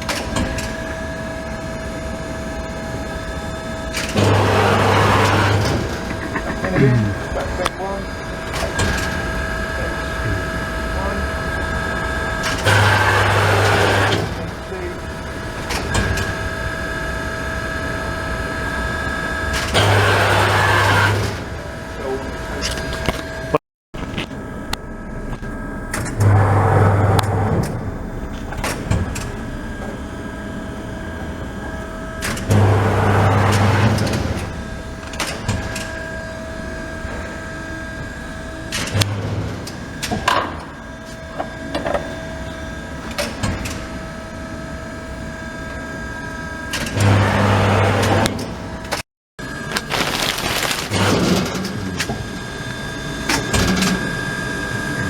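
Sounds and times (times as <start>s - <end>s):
machine whine: 0.0s - 43.0s.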